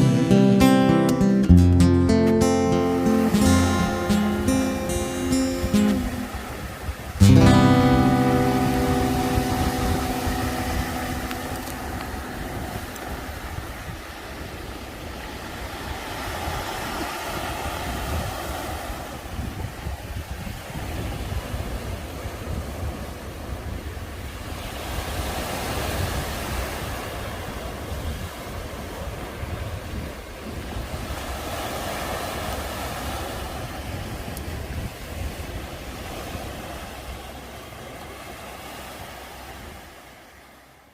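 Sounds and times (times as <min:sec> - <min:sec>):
ocean surf: 0:00.0 - 0:40.9
wind buffeting microphone: 0:03.3 - 0:40.0.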